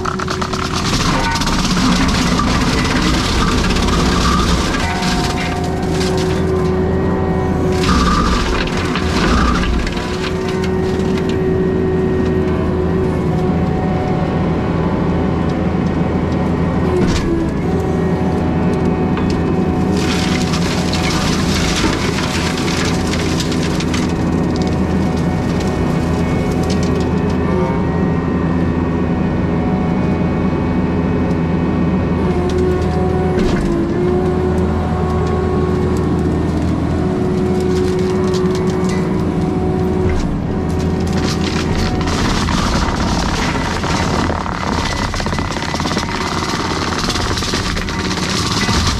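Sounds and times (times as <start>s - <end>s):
flail mower shredding brush: 0.0s - 11.5s, 19.8s - 26.5s, 40.7s - 48.9s
skid steer engine running: 0.0s - 48.9s.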